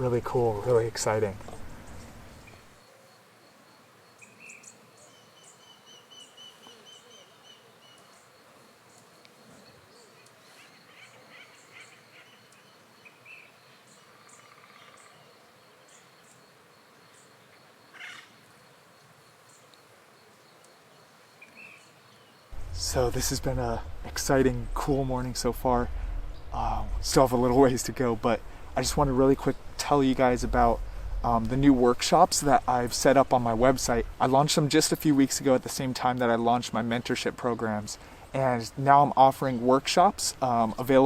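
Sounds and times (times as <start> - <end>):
short bird calls: 4.2 - 16.4, 17.9 - 18.4.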